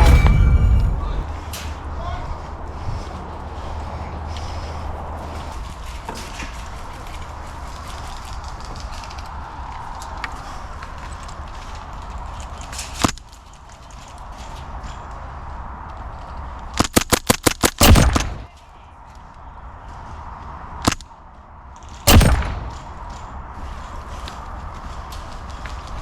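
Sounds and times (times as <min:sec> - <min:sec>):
loud bang: 0:00.0 - 0:01.9, 0:17.8 - 0:18.5, 0:22.1 - 0:23.1
airsoft gun shots: 0:16.8 - 0:18.5, 0:22.1 - 0:23.0.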